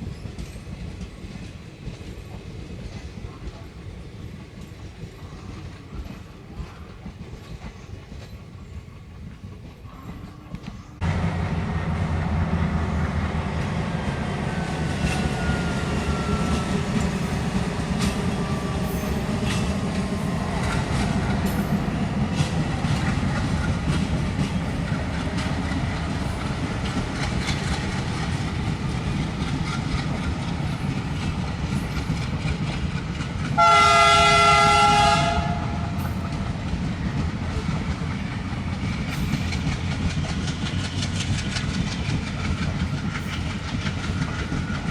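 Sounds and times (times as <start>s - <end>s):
diesel locomotive engine chugging: 0.0s - 44.9s
train wheels clattering: 0.0s - 44.9s
train horn blast: 15.0s - 17.4s, 33.6s - 36.4s.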